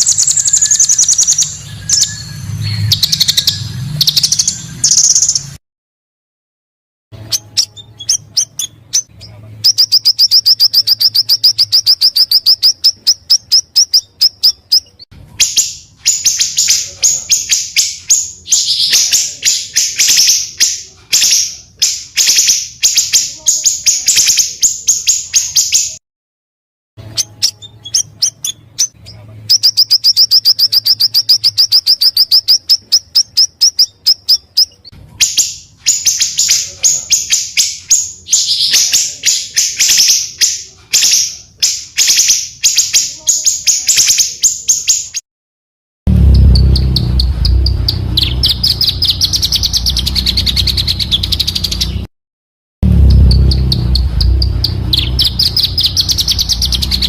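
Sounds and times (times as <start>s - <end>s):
birds harsh chattering: 0.0s - 5.6s, 7.2s - 26.0s, 27.0s - 45.2s, 46.1s - 52.1s, 52.8s - 57.0s
songbird high trill: 52.9s - 57.0s.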